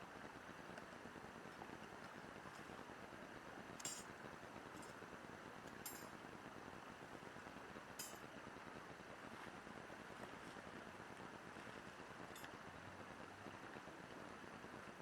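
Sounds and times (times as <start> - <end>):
light clinks of small hard objects: 3.8 - 4.1, 5.8 - 6.2, 8.0 - 8.2.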